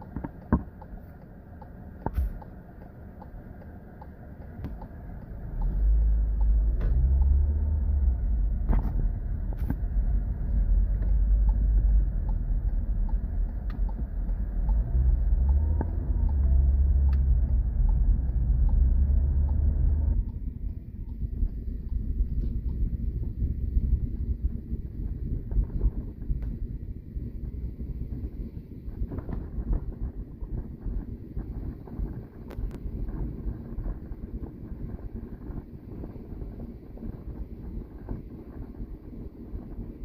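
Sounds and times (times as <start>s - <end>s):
faint ticks: 0.0s - 8.1s, 9.6s - 26.6s
car road and engine rumble: 0.0s - 40.0s.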